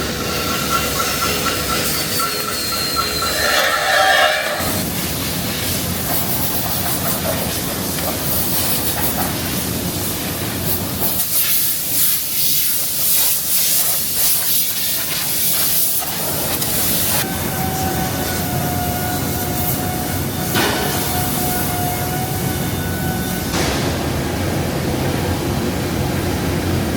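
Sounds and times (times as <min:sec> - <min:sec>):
steady machine whine: 0:00.0 - 0:05.4
loud hissing machinery din: 0:00.0 - 0:14.1.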